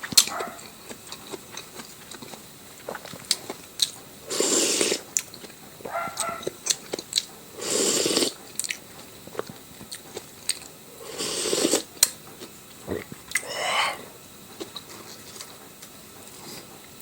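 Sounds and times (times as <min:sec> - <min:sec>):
person chewing: 0:00.0 - 0:15.5
noisy bites or slurps: 0:04.3 - 0:05.1, 0:07.6 - 0:08.4, 0:11.0 - 0:11.9.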